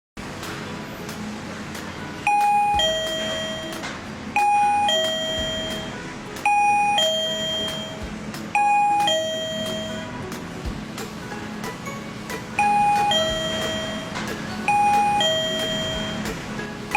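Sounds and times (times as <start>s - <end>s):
doorbell chime ding-dong: 2.3s - 8.0s, 8.6s - 10.2s, 12.6s - 16.3s.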